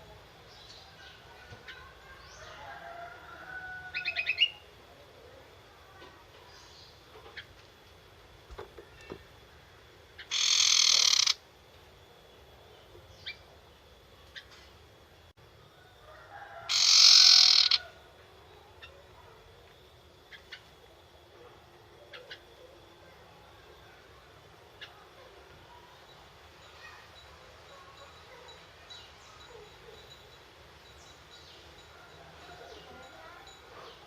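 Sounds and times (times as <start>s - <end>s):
bird harsh rattling chatter: 10.2s - 11.4s, 16.7s - 17.8s.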